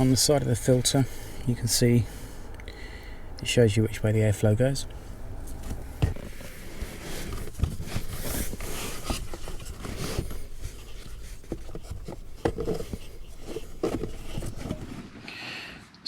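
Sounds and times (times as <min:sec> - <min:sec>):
filter rubbing and scraping: 0:05.4 - 0:15.2.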